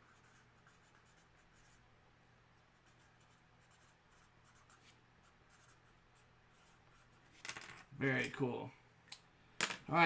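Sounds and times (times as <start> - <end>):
low steady hum: 0.0 - 10.0.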